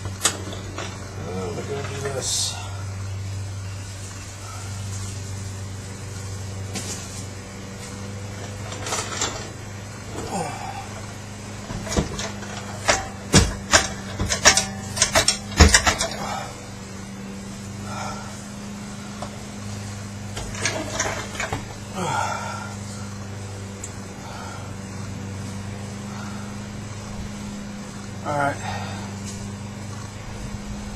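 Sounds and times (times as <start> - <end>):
low electrical hum: 0.0 - 30.9
sharp metal clanks and knocks: 11.6 - 16.3, 20.3 - 21.7.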